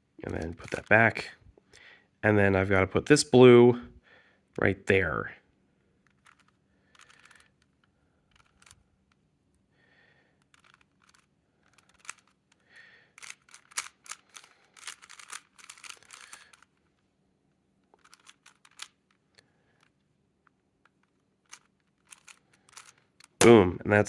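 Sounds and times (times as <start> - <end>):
puzzle cube layers clicking: 0.3 - 1.1, 10.4 - 12.4, 13.2 - 16.7, 18.0 - 19.2, 21.0 - 23.6.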